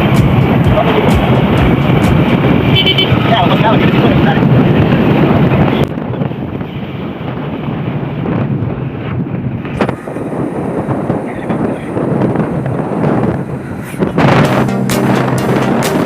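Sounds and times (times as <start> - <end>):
vehicle engine running: 0.0 - 3.8
wind buffeting microphone: 0.0 - 16.0.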